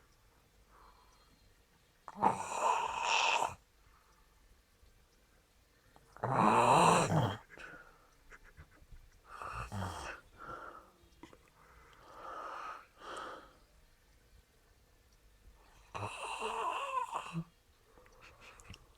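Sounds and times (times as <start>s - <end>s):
pet snoring: 6.2s - 7.4s.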